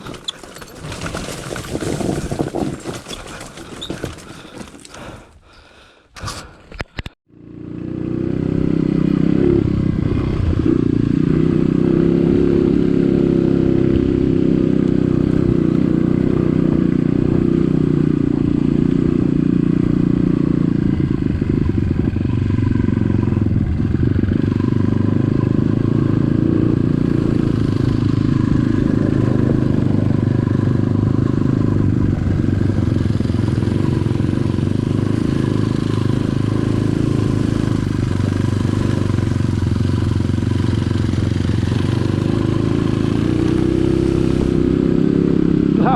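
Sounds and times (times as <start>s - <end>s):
motorcycle engine droning: 7.3s - 45.9s.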